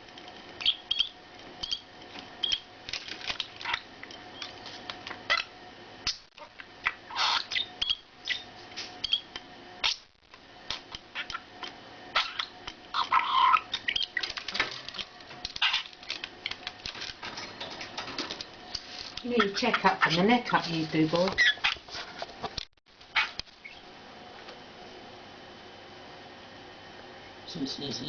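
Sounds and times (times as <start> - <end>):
bird chattering: 0.6 - 1.8, 12.2 - 14.2.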